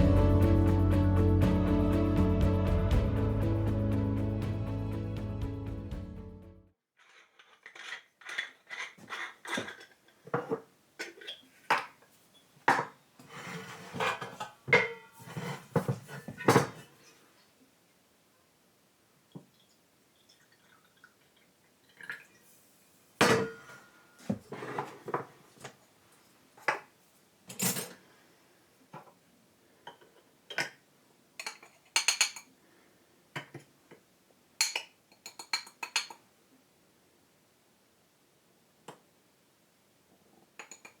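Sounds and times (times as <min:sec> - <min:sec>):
dishes and cutlery clinking: 0:31.4 - 0:32.5, 0:34.6 - 0:36.2, 0:40.6 - 0:41.0.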